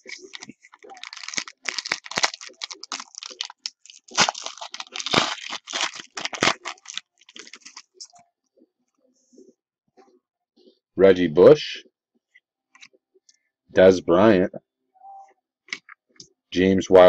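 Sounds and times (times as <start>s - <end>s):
plastic wrapper crackling and tearing: 0.0s - 8.1s.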